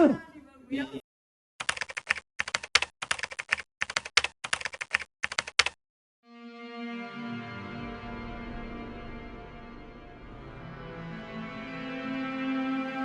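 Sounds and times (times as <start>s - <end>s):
rapid clicking: 1.6s - 5.8s
low sustained music chord: 6.3s - 13.0s.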